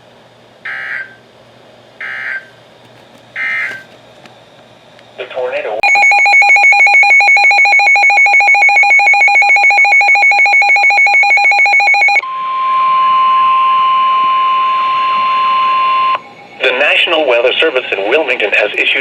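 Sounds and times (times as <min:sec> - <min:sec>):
steady alarm tone: 0:00.6 - 0:01.2, 0:02.0 - 0:02.6, 0:03.4 - 0:03.9, 0:05.8 - 0:19.0
electronic alarm beeping: 0:00.7 - 0:01.2, 0:02.0 - 0:02.5, 0:03.4 - 0:03.9, 0:05.8 - 0:17.4.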